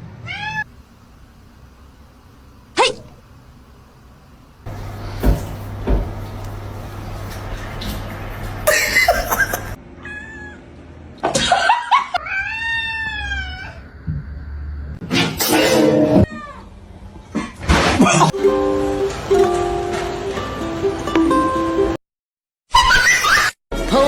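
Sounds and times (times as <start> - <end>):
cats meowing: 0.2 - 0.7, 10.0 - 10.6, 12.2 - 13.9, 16.2 - 16.7.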